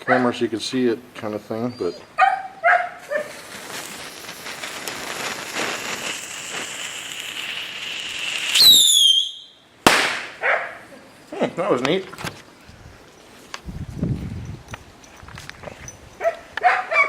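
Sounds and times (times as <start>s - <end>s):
firework piercing whistle: 3.0s - 10.3s
firework hissing: 3.0s - 10.4s.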